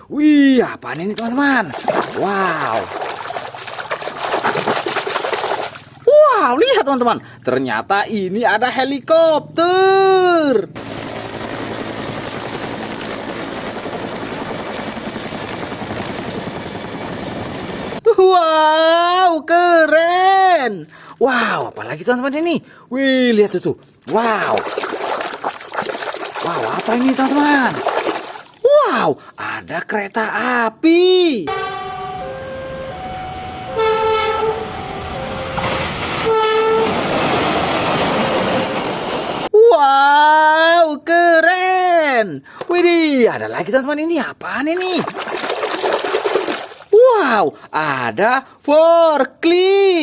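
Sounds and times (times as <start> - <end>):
helicopter rotor chop: 10.8 - 18.0, 31.5 - 39.5
high-pitched whine: 31.5 - 39.5
running train clattering: 31.5 - 39.5
train horn blasts: 31.5 - 39.5.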